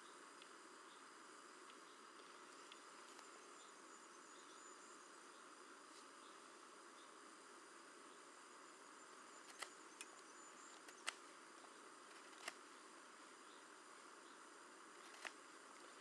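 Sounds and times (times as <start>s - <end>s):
faint steady hiss: 0.0s - 16.0s
sharp clicks: 9.4s - 11.3s, 12.1s - 12.6s, 15.0s - 15.4s.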